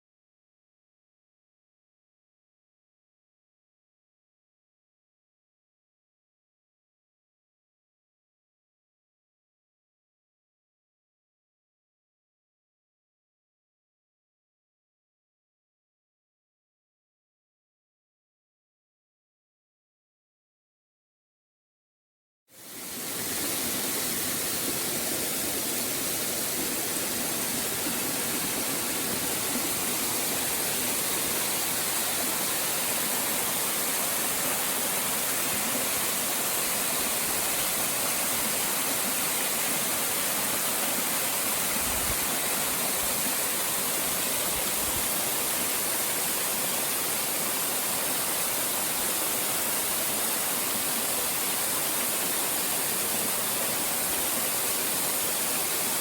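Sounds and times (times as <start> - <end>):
waterfall rushing: 22.6 - 56.0.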